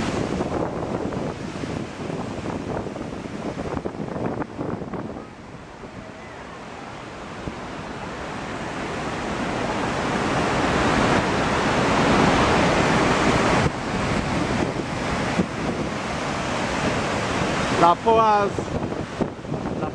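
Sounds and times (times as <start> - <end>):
waterfall rushing: 0.0 - 19.9.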